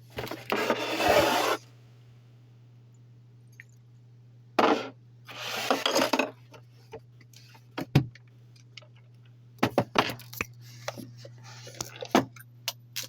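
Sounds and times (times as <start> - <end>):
rustling and scraping of hard objects: 0.0 - 1.7, 4.6 - 7.8, 9.7 - 12.4
steady low hum: 0.0 - 13.0.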